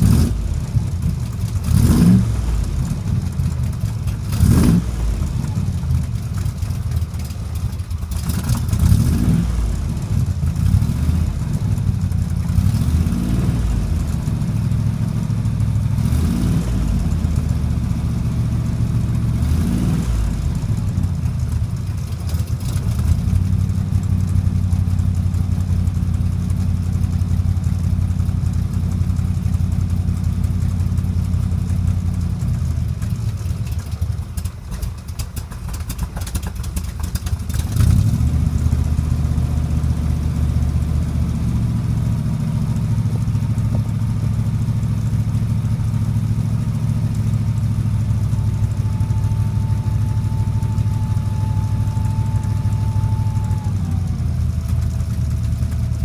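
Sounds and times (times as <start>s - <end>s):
car engine idling: 0.0s - 56.0s.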